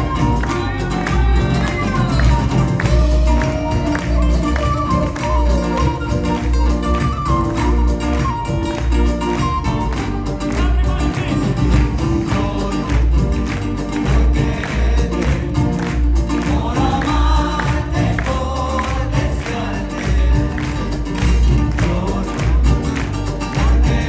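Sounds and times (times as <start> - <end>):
percussion: 0.0 - 24.0
person singing: 0.0 - 24.0
heavy pulsing bass beat: 9.5 - 24.0.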